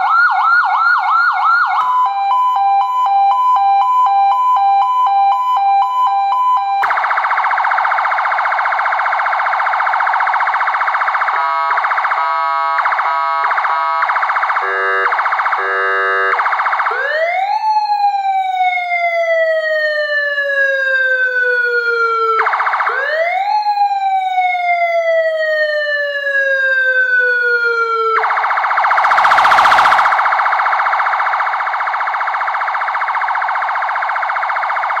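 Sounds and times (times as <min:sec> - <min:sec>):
electronic siren warbling and sweeping: 0:06.8 - 0:18.8, 0:28.0 - 0:35.0.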